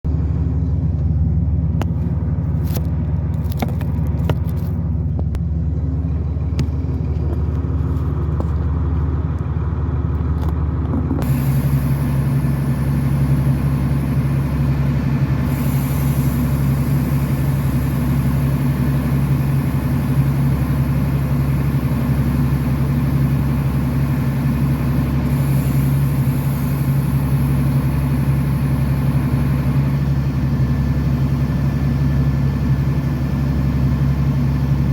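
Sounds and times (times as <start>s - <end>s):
boat engine running: 0.0s - 34.9s
rushing water hiss: 15.4s - 29.9s.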